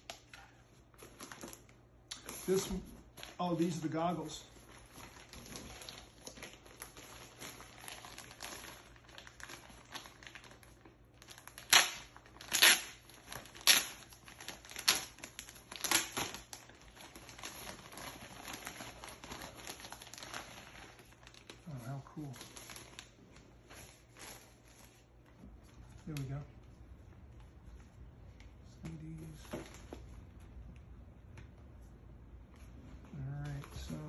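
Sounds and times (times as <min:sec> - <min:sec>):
sharp packaging crinkles: 0:00.0 - 0:25.1
packaging rustling: 0:00.2 - 0:26.4.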